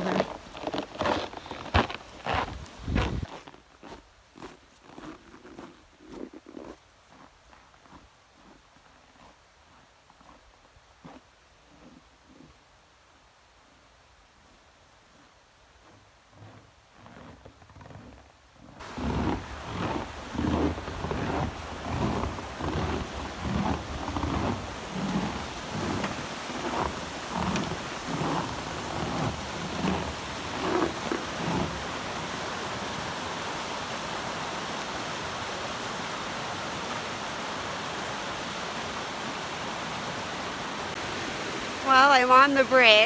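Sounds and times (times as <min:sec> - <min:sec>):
footsteps in snow: 0:00.0 - 0:12.4, 0:18.8 - 0:33.3
waterfall rushing: 0:18.8 - 0:43.0.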